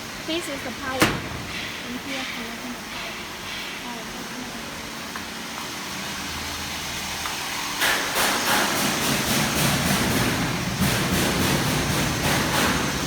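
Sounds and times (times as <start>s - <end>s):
factory machinery humming: 0.0s - 8.2s.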